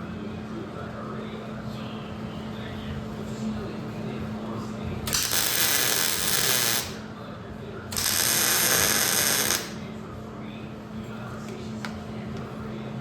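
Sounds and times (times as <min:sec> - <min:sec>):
power tool running: 0:05.1 - 0:07.0, 0:07.9 - 0:09.8.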